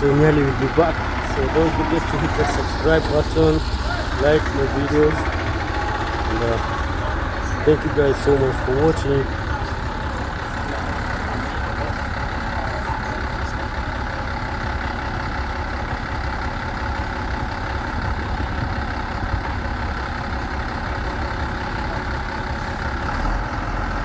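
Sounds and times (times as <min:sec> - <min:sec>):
heavy engine rumbling: 0:00.0 - 0:24.0.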